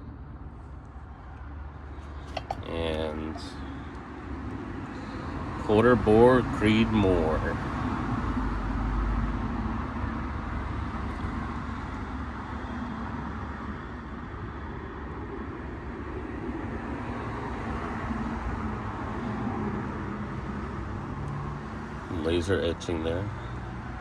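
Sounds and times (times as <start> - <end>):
car running rumble: 1.8 - 7.6.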